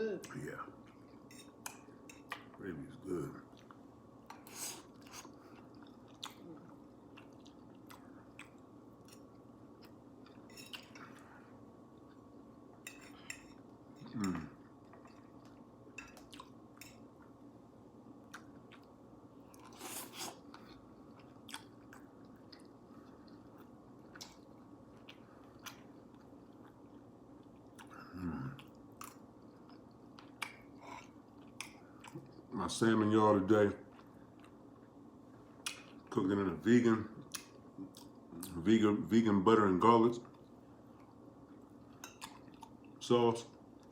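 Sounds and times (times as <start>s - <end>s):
steady low hum: 0.0s - 43.9s
person chewing food: 3.4s - 17.4s, 18.2s - 32.5s, 33.8s - 36.1s, 37.2s - 38.5s, 40.3s - 43.0s.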